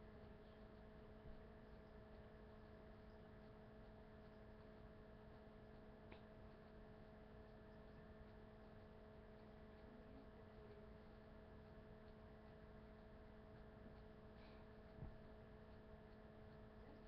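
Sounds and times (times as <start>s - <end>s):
faint electrical hum: 0.0s - 17.0s
faint click: 6.1s - 6.8s.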